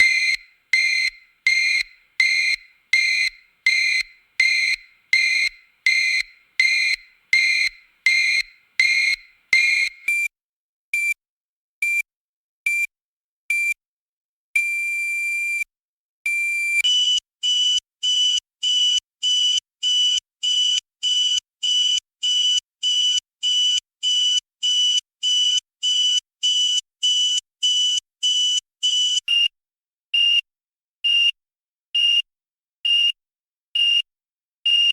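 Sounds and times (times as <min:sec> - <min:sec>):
electronic alarm beeps: 0:00.0 - 0:10.1
long alarm tone: 0:00.0 - 0:10.1.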